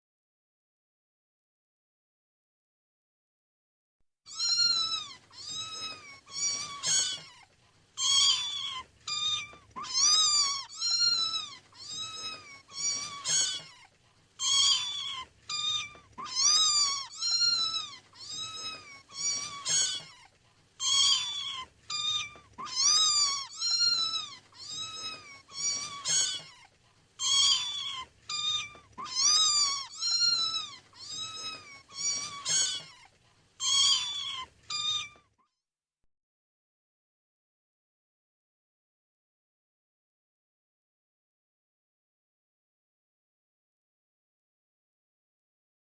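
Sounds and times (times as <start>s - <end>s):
kitten meowing: 4.3s - 35.3s.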